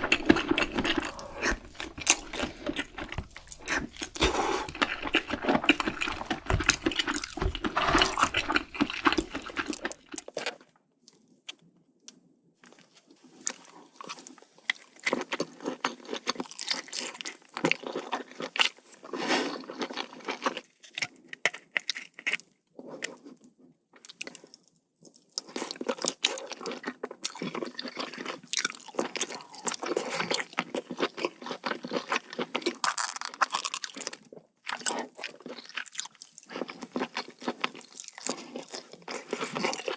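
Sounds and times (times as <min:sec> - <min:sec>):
chewing and crunching crab: 0:00.0 - 0:39.9.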